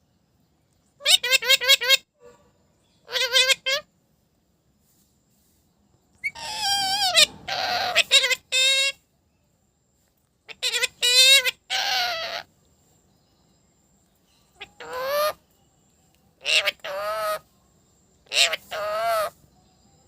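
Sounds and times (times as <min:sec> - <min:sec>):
parrot calls: 0:01.0 - 0:02.1, 0:03.0 - 0:03.9, 0:06.2 - 0:09.0, 0:10.5 - 0:12.5, 0:14.5 - 0:15.4, 0:16.4 - 0:17.5, 0:18.2 - 0:19.4.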